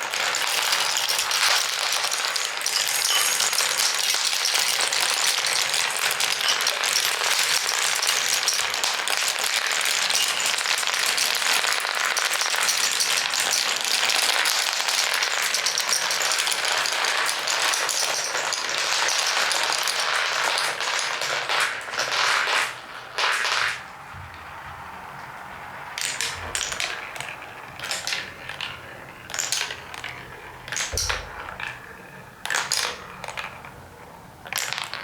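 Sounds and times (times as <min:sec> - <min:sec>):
glass marbles rolling and clattering: 0:00.0 - 0:24.6, 0:25.5 - 0:35.0.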